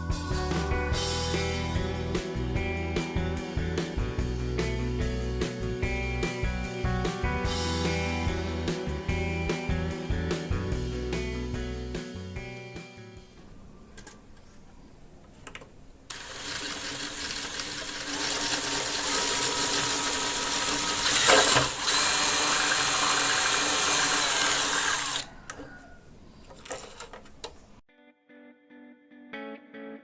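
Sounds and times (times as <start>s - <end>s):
faint clicks and handling noises: 13.9s - 15.8s, 26.4s - 27.7s
small electric motor whirring: 16.1s - 25.3s.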